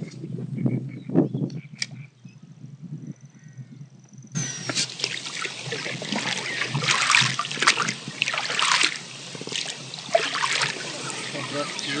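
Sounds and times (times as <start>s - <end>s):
water splashing and trickling: 4.6s - 12.0s.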